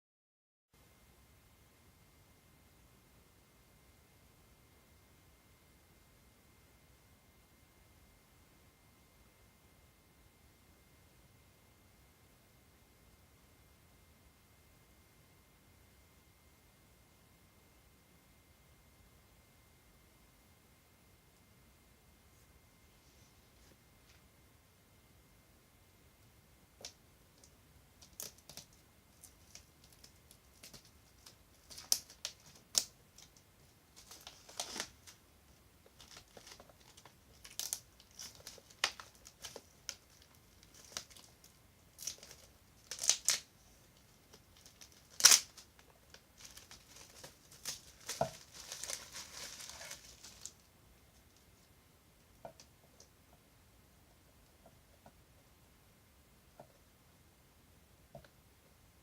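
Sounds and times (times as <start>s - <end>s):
plastic packaging crinkling and tearing: 26.8s - 35.2s, 35.8s - 50.7s.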